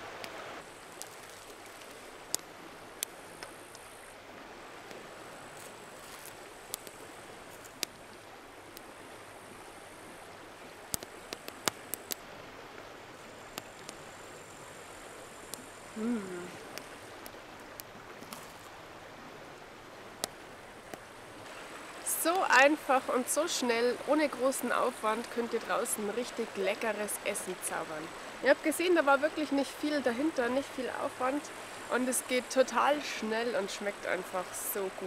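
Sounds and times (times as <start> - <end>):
sharp crackles and pops: 0.2 - 4.0, 4.8 - 9.0, 10.8 - 12.3, 13.2 - 18.8, 20.2 - 21.1
person humming: 16.0 - 16.6.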